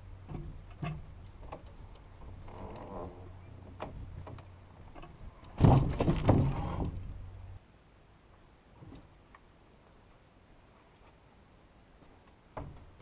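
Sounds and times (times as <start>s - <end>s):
heavy log knocking and scraping: 0.2s - 7.2s, 12.5s - 13.0s.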